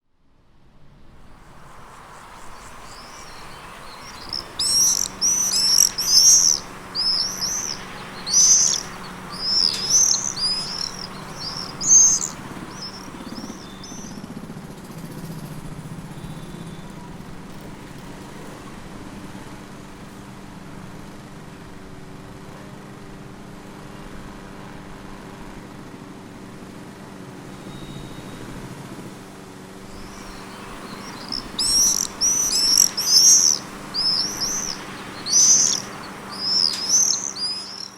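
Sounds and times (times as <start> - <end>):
swifts screaming: 1.4 - 14.4, 29.9 - 37.9
low background hum: 1.5 - 15.5, 29.9 - 37.9.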